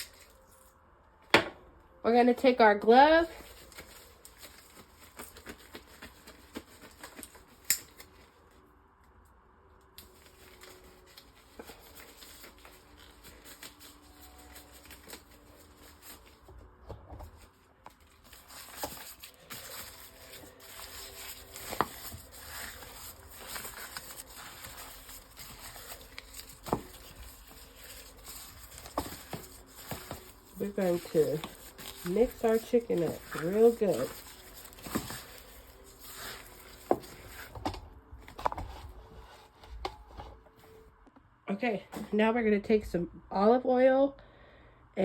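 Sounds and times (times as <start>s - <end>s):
plastic glove rustling: 2.9s - 8.8s, 9.9s - 40.8s.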